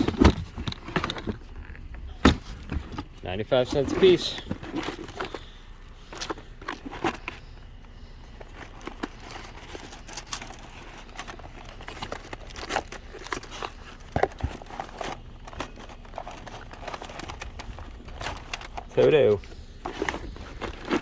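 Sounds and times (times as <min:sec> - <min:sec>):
rustling and crinkling of items: 0:00.0 - 0:21.0.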